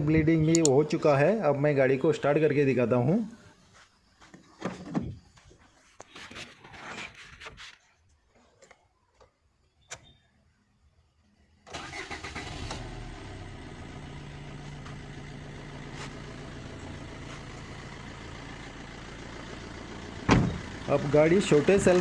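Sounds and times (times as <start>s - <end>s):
diesel engine starting and idling: 11.6s - 22.0s.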